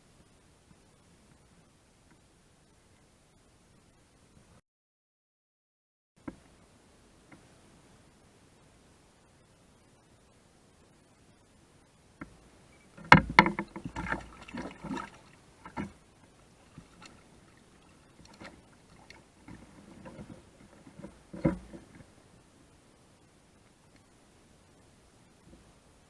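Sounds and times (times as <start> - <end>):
handling noise: 13.0 - 16.0, 16.6 - 22.1
paddle knocking on kayak hull: 13.0 - 16.0, 18.2 - 22.0.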